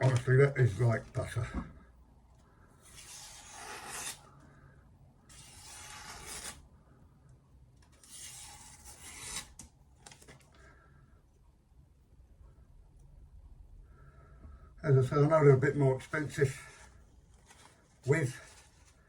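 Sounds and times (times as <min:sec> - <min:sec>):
knife blade rubbing strokes: 0:02.9 - 0:04.2.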